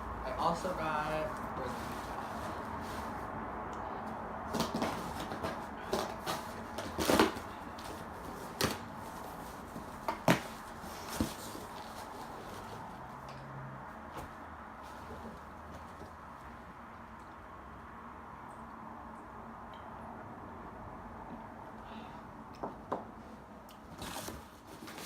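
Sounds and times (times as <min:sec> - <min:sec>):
packaging rustling: 0:04.5 - 0:12.8.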